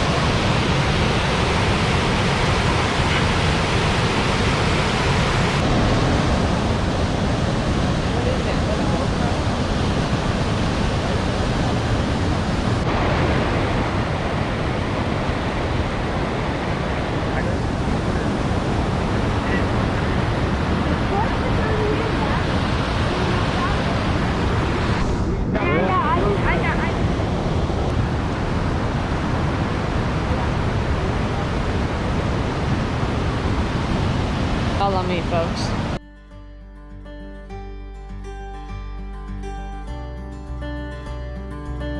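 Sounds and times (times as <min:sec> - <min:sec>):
waterfall rushing: 0:00.0 - 0:36.0.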